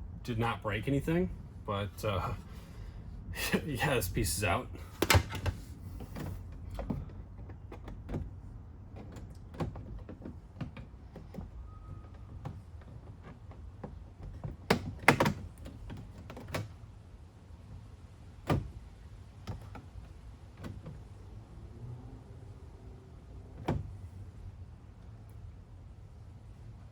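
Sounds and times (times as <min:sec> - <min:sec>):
hands and tools clicking and knocking: 0:05.0 - 0:16.8.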